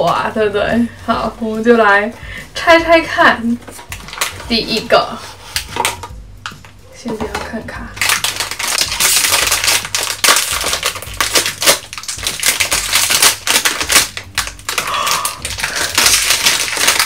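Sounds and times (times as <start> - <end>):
packaging crinkling and crackling: 3.6 - 4.9, 7.9 - 17.0.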